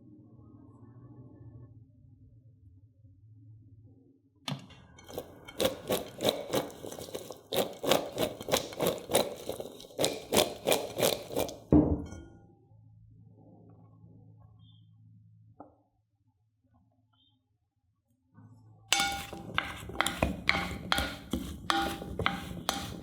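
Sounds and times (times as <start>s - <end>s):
utensil knocking on hard surface: 18.9s - 23.0s.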